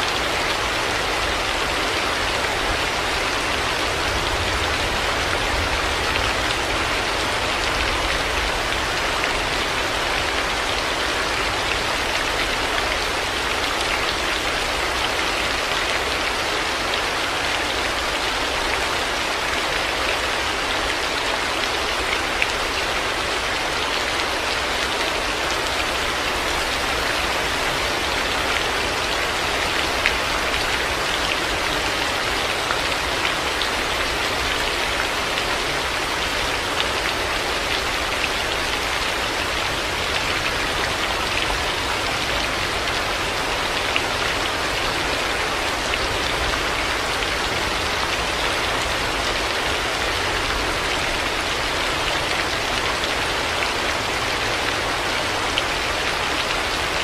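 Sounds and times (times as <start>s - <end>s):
heavy rain on hard surfaces: 0.0s - 57.0s.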